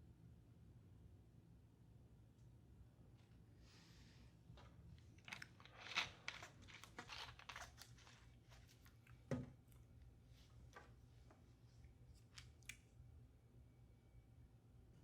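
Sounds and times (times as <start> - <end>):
crunching and crinkling clicks: 4.6 - 9.9.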